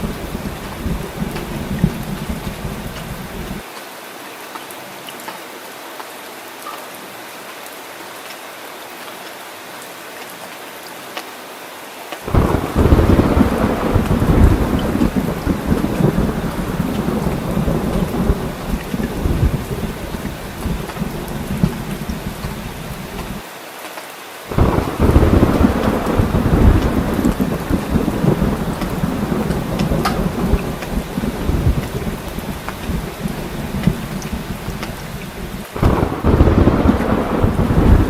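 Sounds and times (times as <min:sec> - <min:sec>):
thunder rumble: 0:00.0 - 0:03.6, 0:12.3 - 0:23.4, 0:24.5 - 0:38.0
heavy rain falling: 0:00.0 - 0:38.0.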